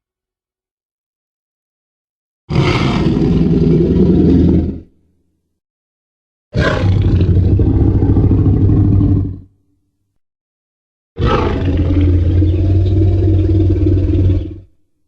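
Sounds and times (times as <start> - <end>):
deep rough monster roar: 2.5 - 4.9, 6.6 - 9.5, 11.2 - 14.7.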